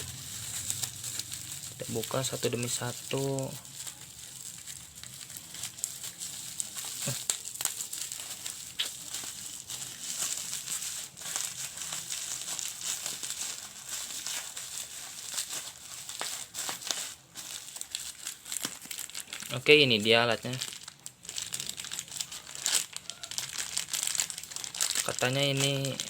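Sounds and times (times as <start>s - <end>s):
packaging crinkling: 0.0s - 26.0s.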